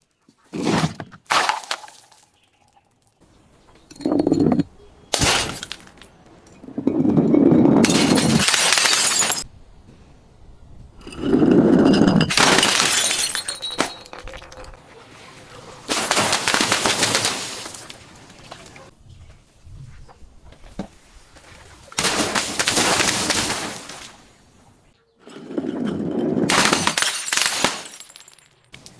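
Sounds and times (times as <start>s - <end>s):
glass bottles shattering: 3.8s - 9.5s, 11.0s - 14.8s, 15.9s - 17.9s, 22.0s - 24.1s, 26.0s - 28.9s.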